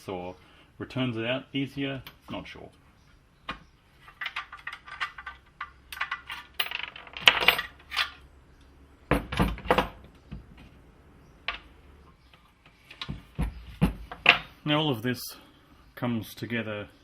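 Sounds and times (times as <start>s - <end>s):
small metal parts clinking: 4.0s - 8.2s.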